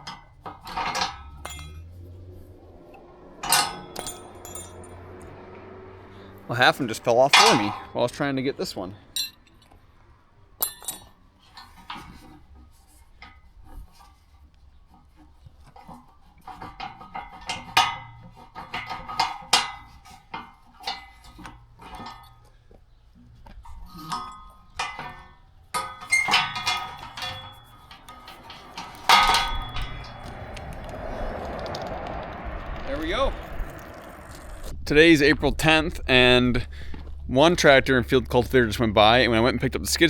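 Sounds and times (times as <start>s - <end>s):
metal fittings and tools clinking: 0.0s - 2.8s, 3.4s - 5.1s, 7.2s - 7.9s, 10.6s - 12.4s, 24.0s - 30.4s.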